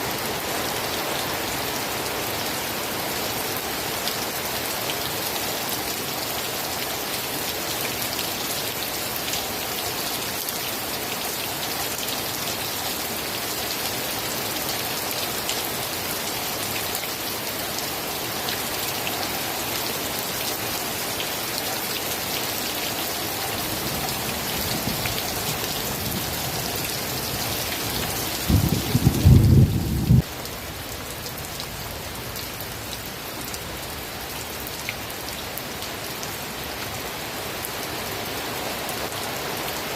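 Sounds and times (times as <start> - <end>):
heavy rain hissing: 0.0 - 39.9
low rumble of thunder: 28.4 - 30.3.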